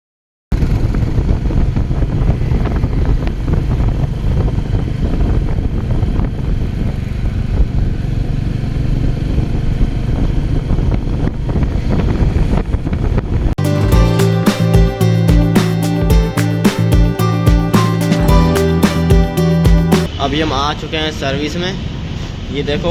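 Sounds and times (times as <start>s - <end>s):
motorcycle engine running: 0.6s - 10.4s
wind rumble on microphone: 0.6s - 13.5s.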